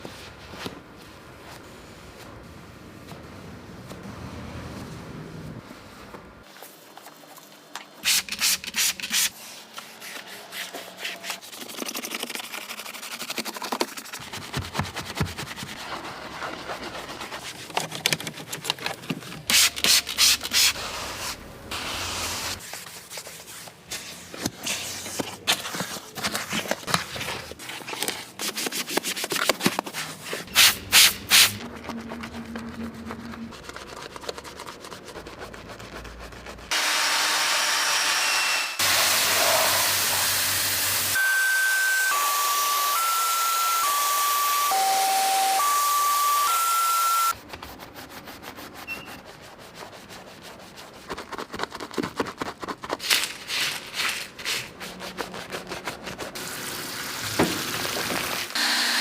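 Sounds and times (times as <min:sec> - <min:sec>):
scrubbing and rubbing on car: 0:04.6 - 0:36.8, 0:47.4 - 0:58.5
loud sharp scrubbing strokes: 0:30.1 - 0:43.0.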